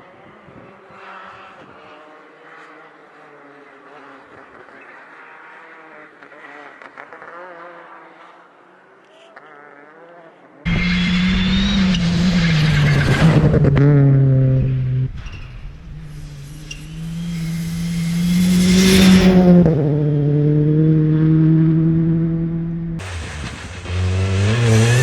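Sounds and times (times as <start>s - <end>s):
car engine revving high: 10.7s - 25.0s
tyres hissing with spray: 15.2s - 20.0s.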